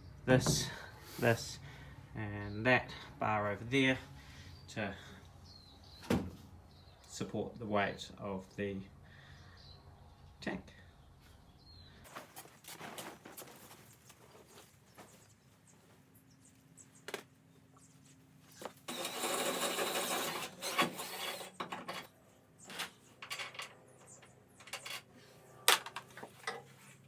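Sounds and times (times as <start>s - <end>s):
power drill running: 18.8s - 22.0s.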